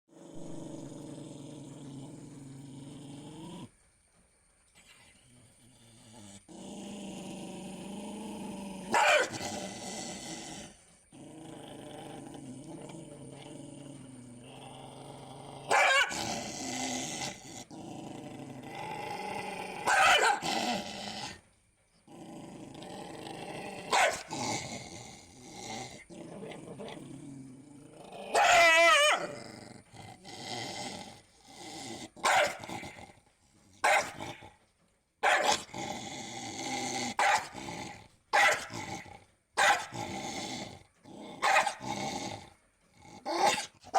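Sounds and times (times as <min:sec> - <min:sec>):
dog growling: 0:00.1 - 0:03.8, 0:05.1 - 0:43.9
dog barking: 0:08.9 - 0:09.4, 0:15.7 - 0:16.2, 0:19.8 - 0:20.5, 0:23.9 - 0:24.3, 0:28.4 - 0:29.3, 0:32.2 - 0:32.8, 0:33.8 - 0:34.2, 0:35.2 - 0:35.6, 0:37.2 - 0:37.6, 0:38.3 - 0:38.7, 0:39.6 - 0:39.9, 0:41.4 - 0:41.8.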